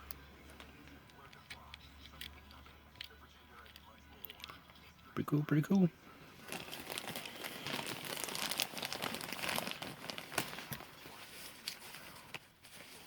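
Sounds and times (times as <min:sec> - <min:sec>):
packaging crinkling and rustling: 0:06.4 - 0:13.0.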